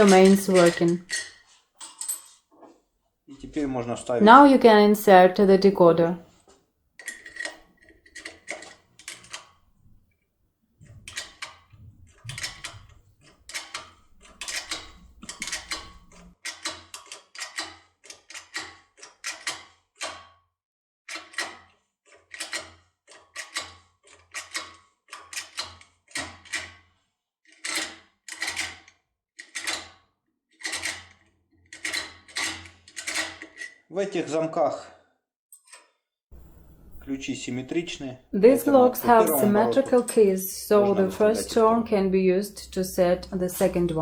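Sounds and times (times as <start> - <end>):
metallic clicks in a lock: 13.5 - 20.2, 31.7 - 33.8.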